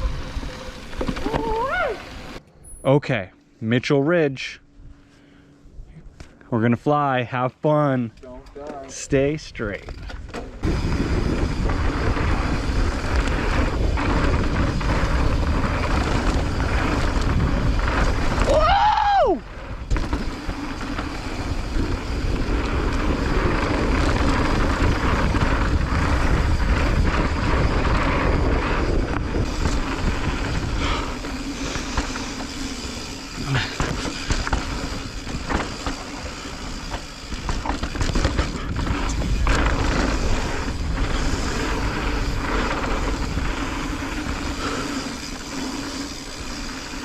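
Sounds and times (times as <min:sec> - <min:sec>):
bike knocking and rattling: 0:00.0 - 0:02.4, 0:08.1 - 0:47.0
tyres rolling on dirt: 0:00.0 - 0:02.4, 0:09.6 - 0:47.0
wind rushing over microphone: 0:10.6 - 0:46.4.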